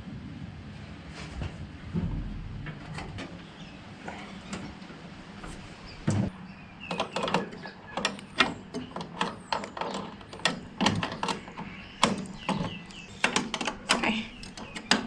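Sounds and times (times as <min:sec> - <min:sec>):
heavy thump: 0:01.4 - 0:02.9
hand tools and metal parts clicking: 0:06.9 - 0:15.0.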